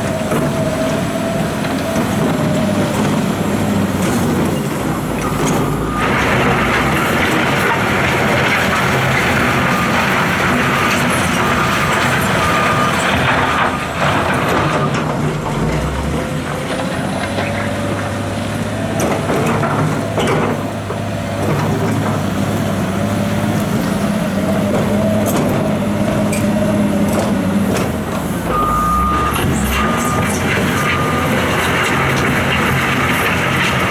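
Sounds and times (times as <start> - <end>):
heavy diesel engines running: 0.0 - 33.9
reverse alarm beeping: 5.3 - 7.4, 9.6 - 13.9, 28.5 - 31.6.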